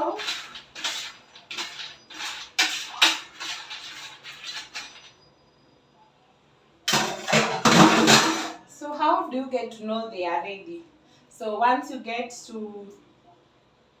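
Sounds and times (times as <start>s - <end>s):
peanuts rattling on metal tray: 0.0s - 5.2s.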